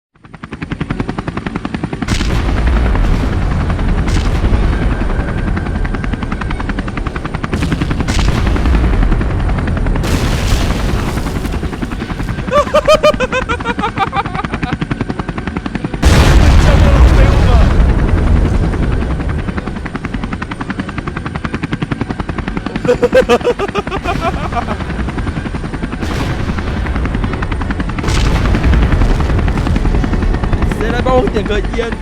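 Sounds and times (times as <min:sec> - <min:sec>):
helicopter rotor chopping: 0:00.2 - 0:32.0
loud bangs: 0:02.1 - 0:14.1, 0:16.0 - 0:21.1, 0:23.6 - 0:31.7.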